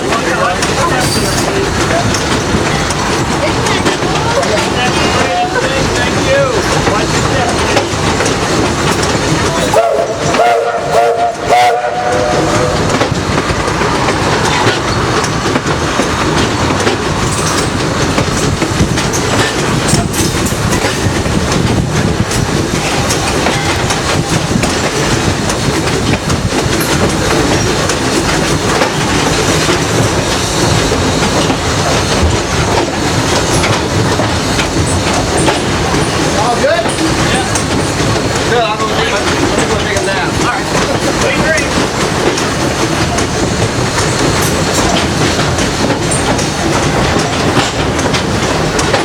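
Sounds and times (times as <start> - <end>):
train wheels clattering on rails: 0.0 - 49.0
steam locomotive whistle: 9.7 - 13.0.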